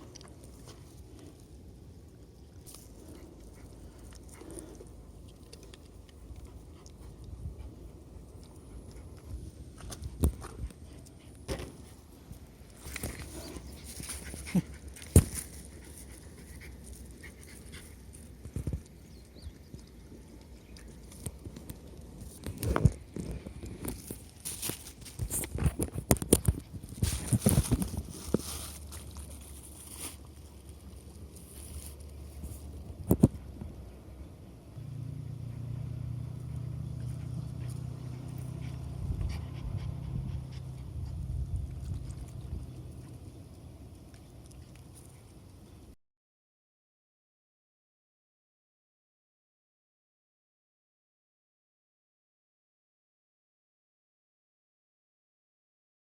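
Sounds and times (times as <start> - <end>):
dog panting: 37.0 - 41.3.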